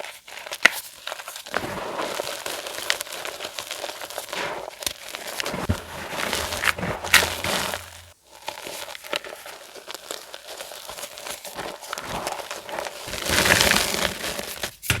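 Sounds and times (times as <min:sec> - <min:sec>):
chalk being crushed: 0:03.8 - 0:08.2.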